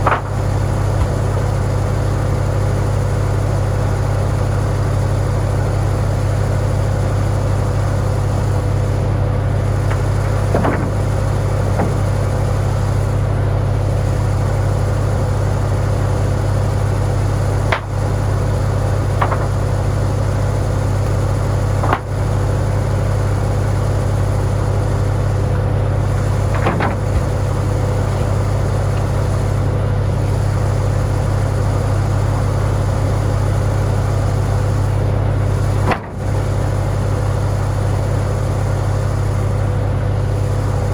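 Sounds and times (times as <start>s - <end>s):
sharp knocks: 0.0s - 1.5s, 9.8s - 12.4s, 17.5s - 22.4s, 26.1s - 29.1s, 35.8s - 36.4s
tractor engine running: 0.0s - 40.9s.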